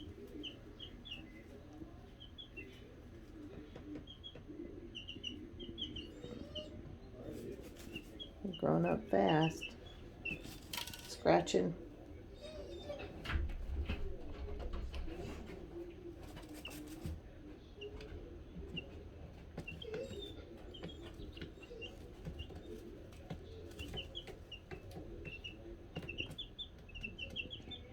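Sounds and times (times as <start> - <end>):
chicks peeping: 0.0 - 27.9.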